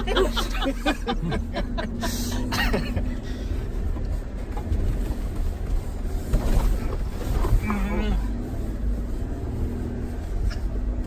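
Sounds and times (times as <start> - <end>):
vehicle body rattling: 0.0 - 8.1
vehicle engine rumble: 0.0 - 11.0.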